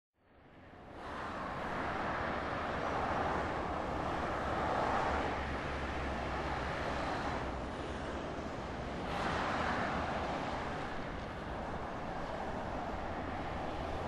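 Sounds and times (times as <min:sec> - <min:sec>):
highway traffic: 0:00.2 - 0:14.0.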